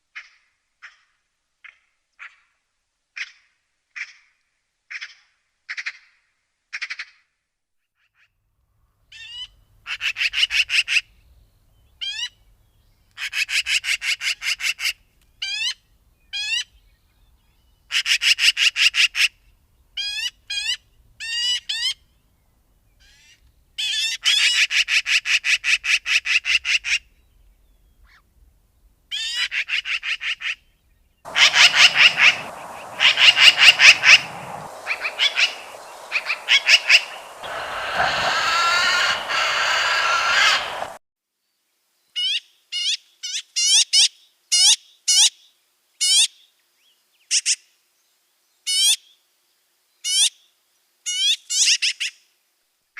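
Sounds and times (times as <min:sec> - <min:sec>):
background hiss: 0:31.3 - 0:41.0
magpie chattering: 0:31.3 - 0:41.0.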